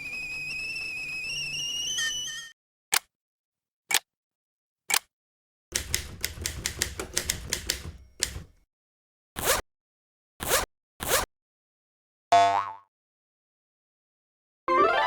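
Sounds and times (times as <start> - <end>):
mechanical clacking: 5.7 - 8.6.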